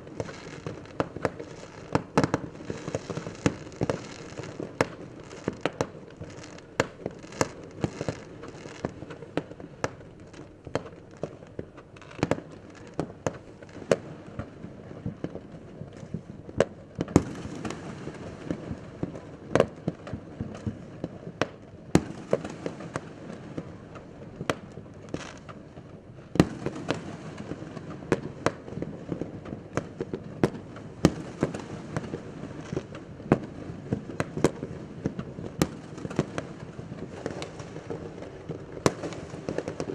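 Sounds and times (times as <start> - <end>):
distant fireworks rumbling and crackling: 0.0 - 39.9
fireworks banging: 0.1 - 10.0, 30.5 - 39.9.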